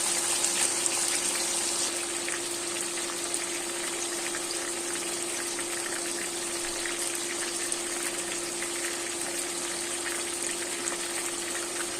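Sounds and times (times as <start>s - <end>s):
chicken sizzling in hot oil: 0.0s - 11.9s.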